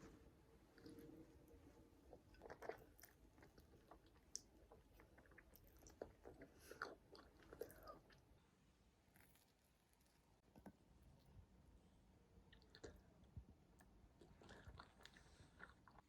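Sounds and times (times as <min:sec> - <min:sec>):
person chewing and crunching: 0:02.1 - 0:08.2, 0:14.2 - 0:16.0.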